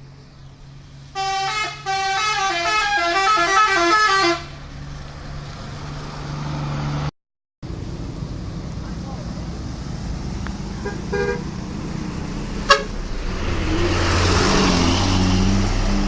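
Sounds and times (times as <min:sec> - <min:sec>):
low engine hum: 0:00.0 - 0:16.0
bus horn playing a tune: 0:01.1 - 0:04.6, 0:10.8 - 0:11.4, 0:12.6 - 0:13.0.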